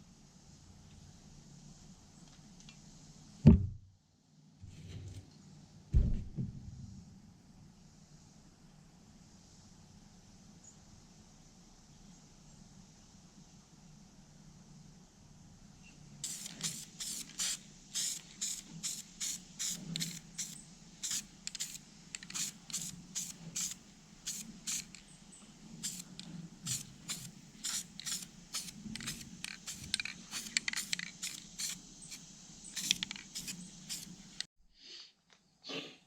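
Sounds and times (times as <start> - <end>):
aerosol spray can hissing: 16.2 - 25.0, 25.8 - 34.5.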